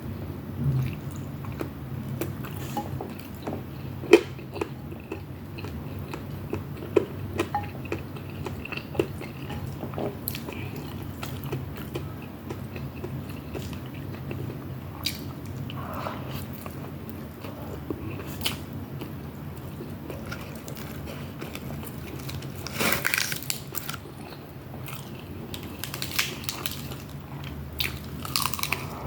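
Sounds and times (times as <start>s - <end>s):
steady low hum: 0.0s - 29.0s
chewing and biting: 27.8s - 29.0s.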